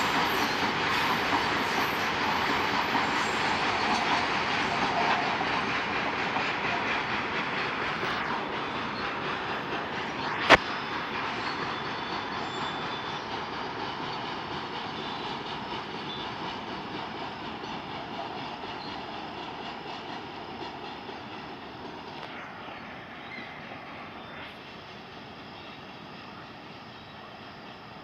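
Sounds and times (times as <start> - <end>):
goods train rolling past: 0.0 - 28.0
sharp click: 10.4 - 10.7.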